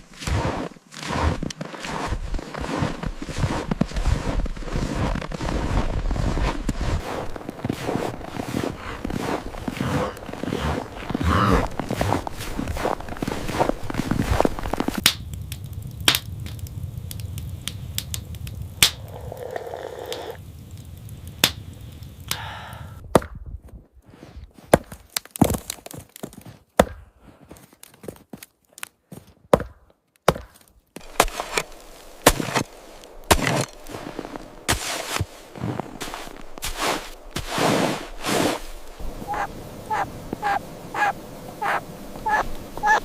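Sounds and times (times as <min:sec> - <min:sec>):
sharp knocks and cracks: 0:14.7 - 0:19.0, 0:24.7 - 0:27.1, 0:29.5 - 0:33.9.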